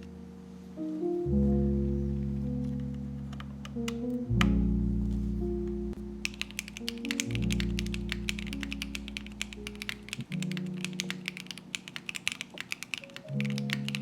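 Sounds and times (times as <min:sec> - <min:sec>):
background music: 0:00.0 - 0:14.0
fast typing on mechanical keyboard: 0:06.3 - 0:14.0.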